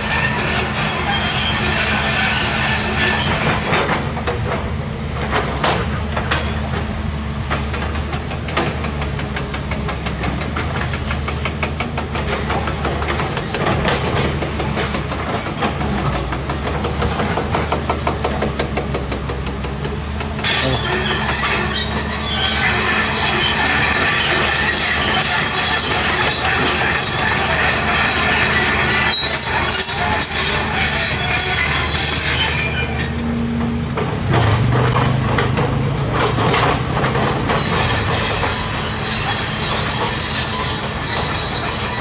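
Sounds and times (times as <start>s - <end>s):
excavator diesel engine running: 0.0s - 42.0s
metallic clanks and rattles: 32.2s - 42.0s.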